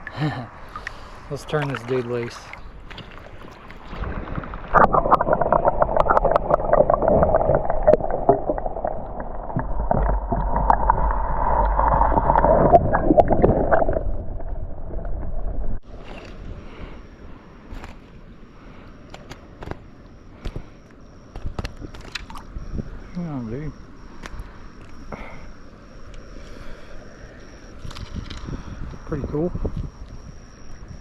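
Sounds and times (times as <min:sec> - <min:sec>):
water splashing and sloshing: 0:00.0 - 0:22.9
low rumble: 0:04.0 - 0:16.0.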